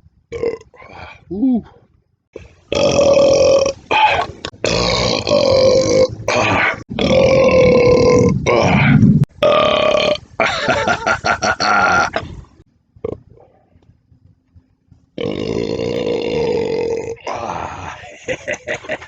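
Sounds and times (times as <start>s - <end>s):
man burping loudly: 0.3s - 1.6s, 2.4s - 12.4s, 15.2s - 18.7s.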